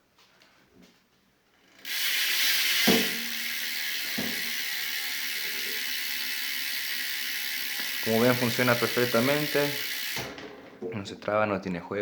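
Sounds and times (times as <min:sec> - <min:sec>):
bicycle hub ratcheting buzz: 0:01.5 - 0:10.4.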